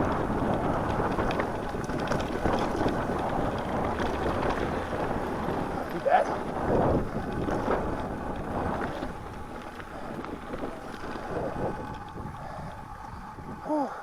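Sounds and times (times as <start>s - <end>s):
bike tyres crunching over snow: 0.0s - 14.0s
wind buffeting microphone: 0.0s - 14.0s.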